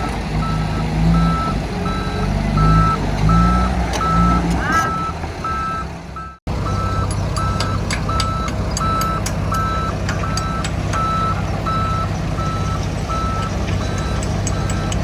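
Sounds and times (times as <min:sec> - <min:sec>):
heavy diesel machinery running: 0:00.0 - 0:15.0
reversing alarm beeping: 0:00.4 - 0:15.0
sharp metallic clicks: 0:06.8 - 0:15.0.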